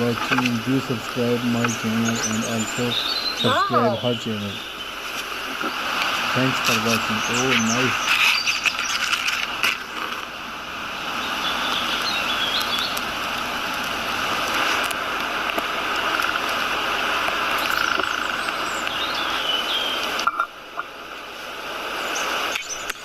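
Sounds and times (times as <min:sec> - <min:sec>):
forest ambient hiss: 0:00.0 - 0:23.0
bird chirps: 0:00.3 - 0:05.0, 0:06.4 - 0:09.4, 0:11.2 - 0:13.0, 0:17.6 - 0:20.5, 0:22.0 - 0:23.0.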